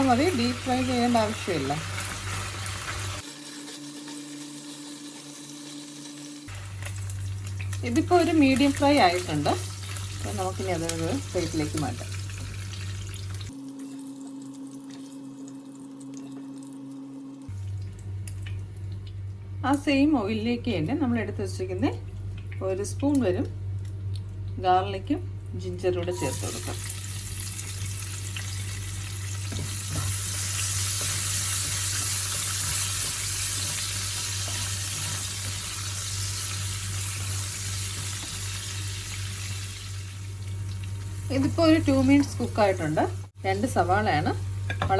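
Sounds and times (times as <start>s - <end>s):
oil sizzling in a frying pan: 0.0s - 15.5s, 26.1s - 44.9s.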